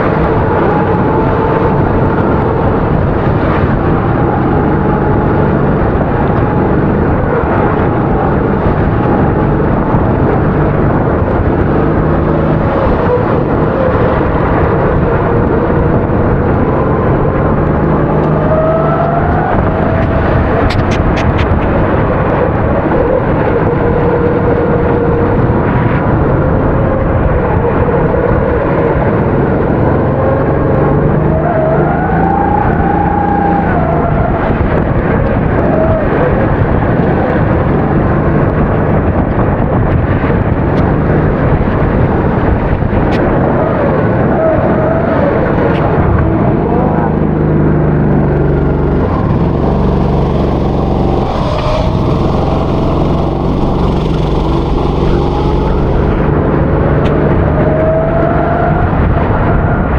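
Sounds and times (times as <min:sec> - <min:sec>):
kart engine revving: 0:00.0 - 0:25.5, 0:46.5 - 0:57.1.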